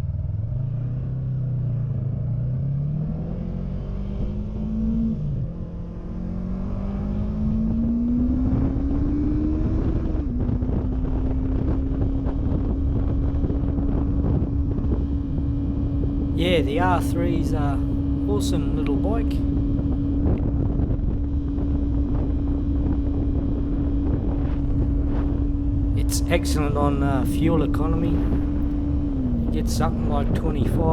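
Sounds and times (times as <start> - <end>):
motorcycle engine accelerating: 0.0 - 30.9
wind rush: 9.8 - 30.9.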